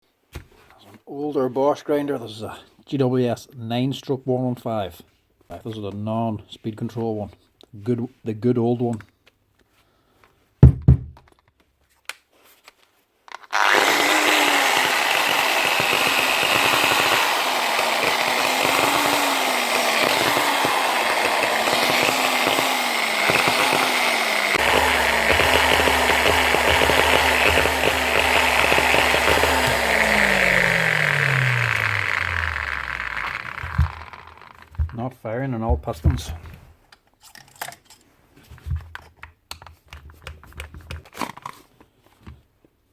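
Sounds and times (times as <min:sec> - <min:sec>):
angle grinder motor surging: 0:13.5 - 0:34.9.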